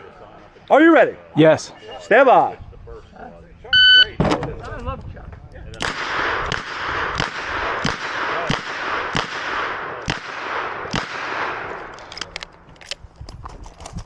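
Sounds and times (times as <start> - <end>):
revolver gunshots: 5.8 - 12.0.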